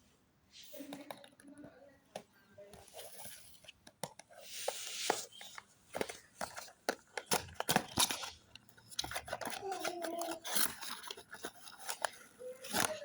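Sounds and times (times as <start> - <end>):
packaging clicks and taps: 0.8 - 13.0
packaging rustling and tearing: 4.5 - 13.0.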